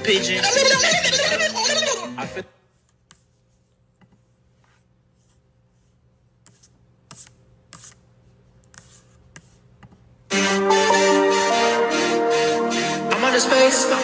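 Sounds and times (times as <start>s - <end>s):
loud electronic music: 10.3s - 14.0s.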